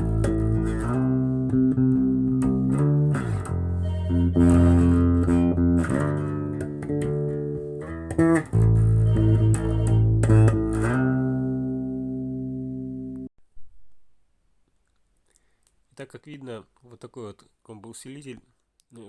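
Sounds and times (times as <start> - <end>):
bass guitar sustained notes: 0.0 - 13.3.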